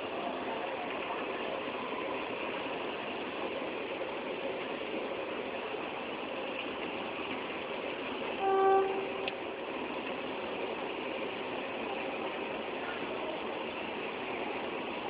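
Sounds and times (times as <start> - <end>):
train engine noise: 0.0 - 15.0
train horn toot: 8.4 - 9.4.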